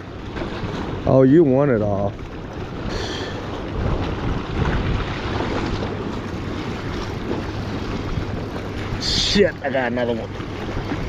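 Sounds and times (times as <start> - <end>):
wind buffeting microphone: 0.0 - 11.0.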